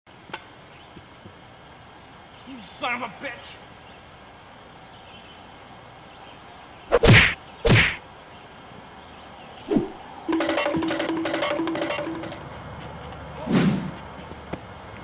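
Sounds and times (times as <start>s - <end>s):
short thud: 6.9s - 8.0s
whooshing hit sound effects: 6.9s - 8.0s, 13.5s - 14.0s
rhythmic percussive music: 10.3s - 12.4s.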